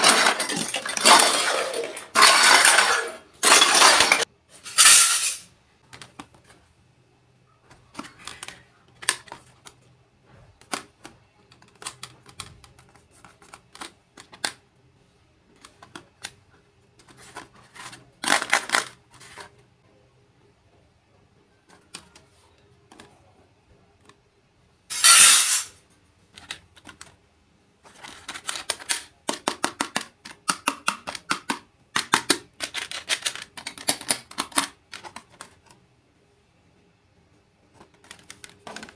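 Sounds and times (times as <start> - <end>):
toy kitchen pieces clicking: 0.0 - 6.4, 7.7 - 9.9, 10.5 - 14.6, 15.5 - 16.4, 17.0 - 19.5, 21.6 - 23.3, 26.3 - 27.2, 27.9 - 35.8, 37.7 - 38.9.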